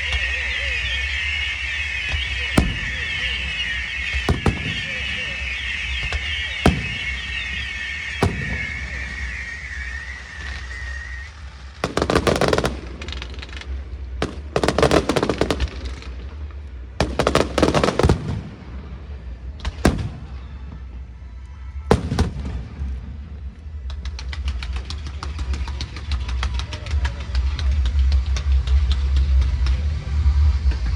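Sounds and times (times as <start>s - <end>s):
whistling firework shell: 0.0s - 27.8s
fireworks bangs and crackle: 0.0s - 30.9s
fast firework crackling: 0.2s - 21.1s.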